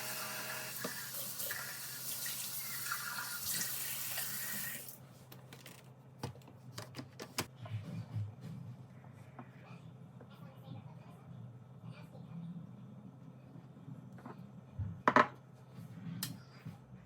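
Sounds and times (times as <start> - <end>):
water running from a tap: 0.0 - 5.0.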